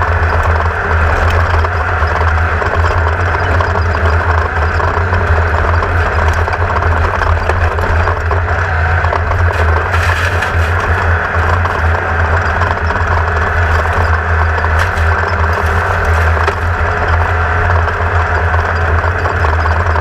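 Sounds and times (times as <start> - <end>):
race car engine droning: 0.0 - 20.0.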